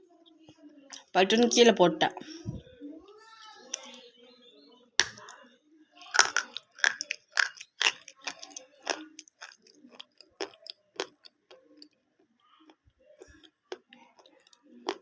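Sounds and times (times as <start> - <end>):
crunching between teeth: 6.0 - 15.0.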